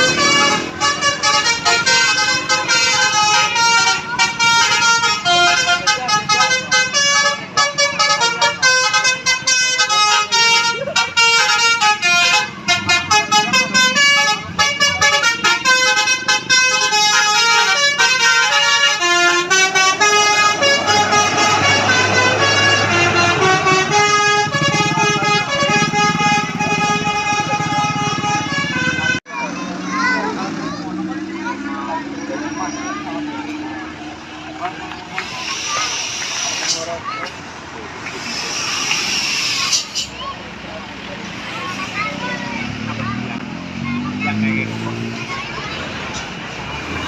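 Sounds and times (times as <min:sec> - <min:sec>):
musical air horn playing a tune: 0:00.0 - 0:29.2.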